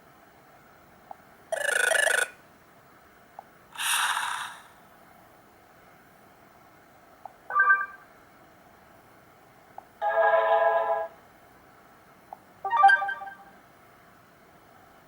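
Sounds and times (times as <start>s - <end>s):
faint hiss: 3.7s - 5.1s
phone ringtone snippets: 7.5s - 8.0s, 12.7s - 13.5s.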